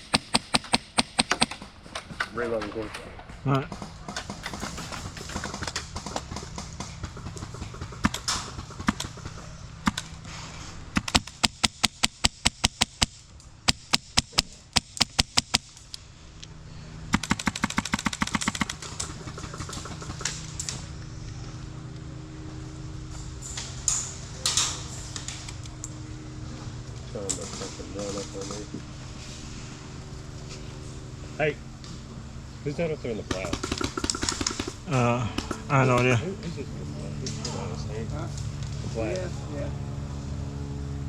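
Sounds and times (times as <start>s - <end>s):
airsoft rifle shots: 0.0s - 2.2s, 4.2s - 15.9s, 17.1s - 20.8s, 33.3s - 36.2s.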